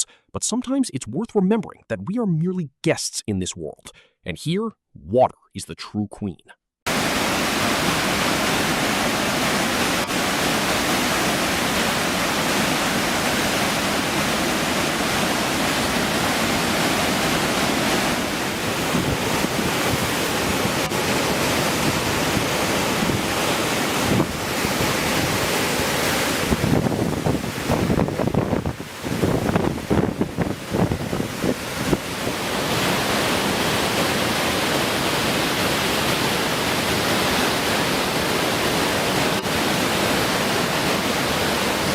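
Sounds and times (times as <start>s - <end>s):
water rushing: 6.9s - 41.9s
wind buffeting microphone: 26.4s - 32.1s.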